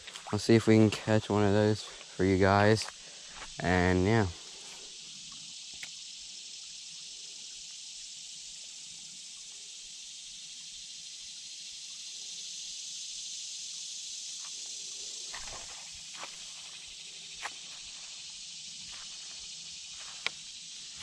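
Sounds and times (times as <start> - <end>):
high-pitched insect chorus: 0.0 - 21.0.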